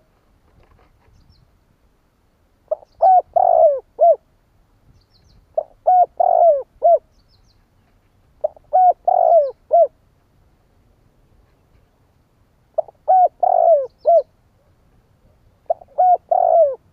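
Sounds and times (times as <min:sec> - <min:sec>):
dove cooing: 0:02.7 - 0:04.2, 0:05.6 - 0:07.1, 0:08.4 - 0:10.0, 0:12.8 - 0:14.7, 0:15.3 - 0:16.9.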